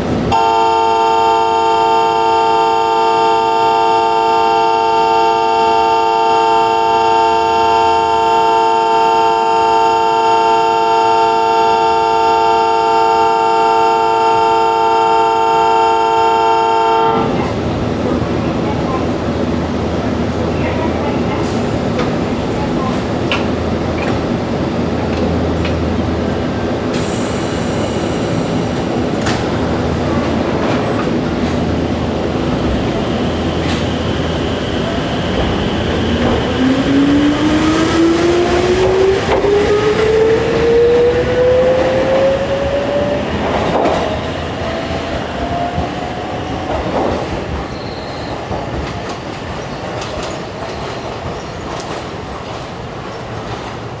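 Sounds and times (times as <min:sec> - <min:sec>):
electric train running noise: 0:21.2 - 0:54.0.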